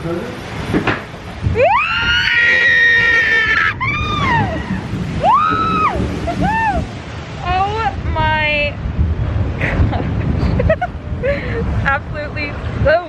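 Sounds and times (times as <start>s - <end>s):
riders screaming: 1.6s - 7.0s.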